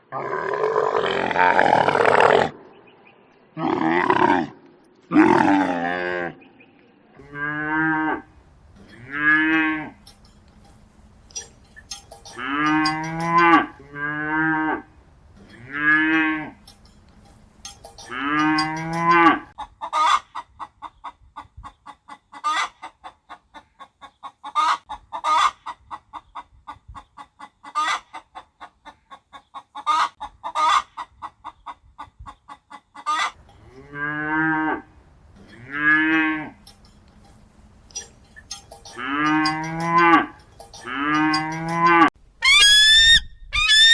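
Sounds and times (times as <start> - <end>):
farm animal calling: 7.2 - 20.1, 33.1 - 43.9.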